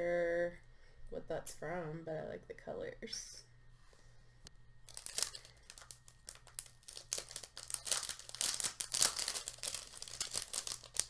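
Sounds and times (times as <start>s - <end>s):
packaging crinkling: 4.8s - 11.0s.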